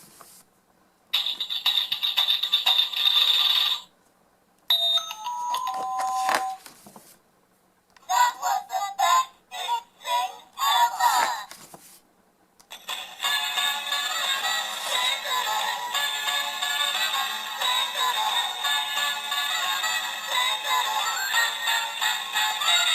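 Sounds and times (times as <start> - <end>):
sound book musical clips: 12.7 - 22.9.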